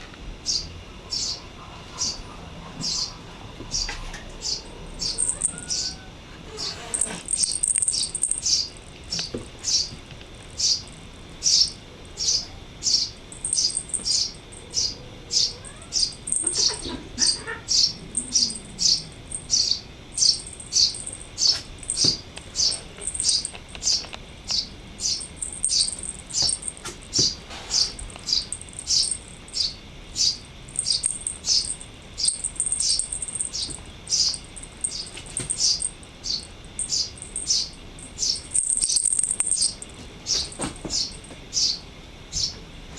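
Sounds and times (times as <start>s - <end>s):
high thin bird trill: 3.7s - 10.0s, 10.6s - 41.8s
songbird chirping: 10.6s - 42.6s.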